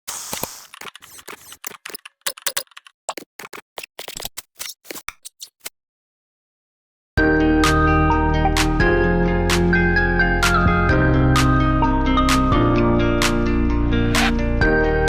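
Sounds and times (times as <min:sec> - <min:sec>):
sharp clicks and knocks: 0:00.1 - 0:05.7.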